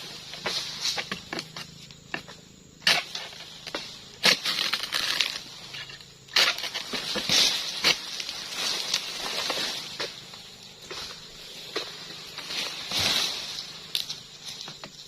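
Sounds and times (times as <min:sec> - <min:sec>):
fronds rustling: 0:00.0 - 0:15.0
chisel cracking strikes on fronds: 0:00.3 - 0:05.5, 0:06.3 - 0:15.0.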